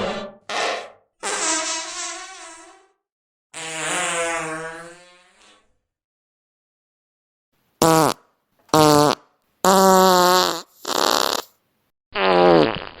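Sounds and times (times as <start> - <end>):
farts: 0.0 - 3.0, 3.6 - 5.8, 7.8 - 11.6, 12.2 - 13.0.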